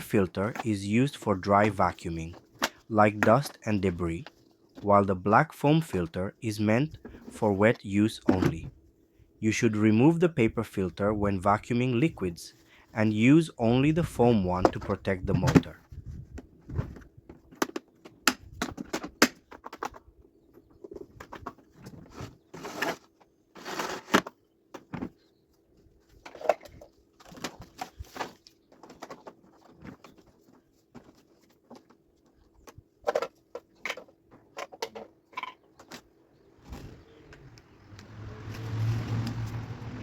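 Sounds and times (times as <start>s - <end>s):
plastic parts clicking and knocking: 14.6s - 22.3s, 26.1s - 36.1s.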